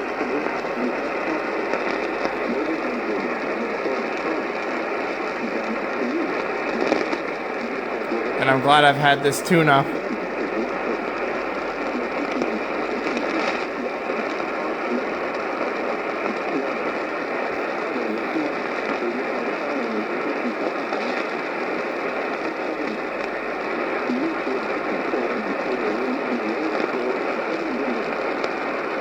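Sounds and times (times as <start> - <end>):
faint broadcast voice: 8.0 - 13.3.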